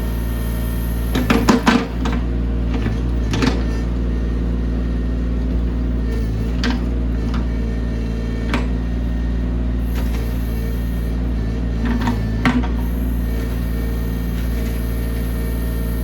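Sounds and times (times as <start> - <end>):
excavator engine running: 0.0 - 16.0.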